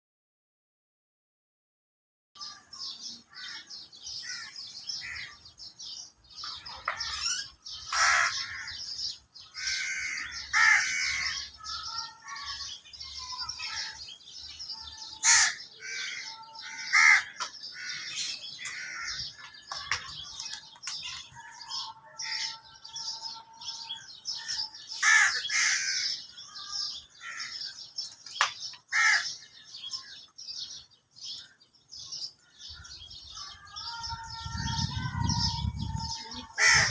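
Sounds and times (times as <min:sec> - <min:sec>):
crow caws: 0:03.3 - 0:05.4, 0:06.9 - 0:11.5, 0:15.2 - 0:19.5, 0:24.9 - 0:26.2, 0:27.2 - 0:27.7, 0:28.9 - 0:29.4, 0:36.5 - 0:36.9.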